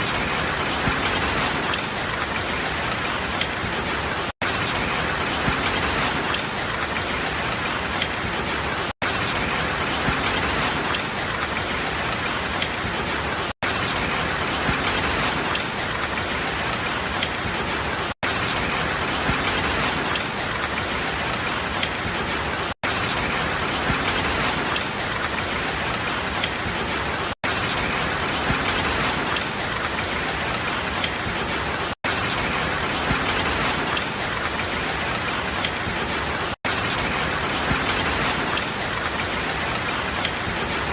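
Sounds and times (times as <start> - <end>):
rain pattering: 0.0 - 40.9
drops ticking: 0.3 - 40.6.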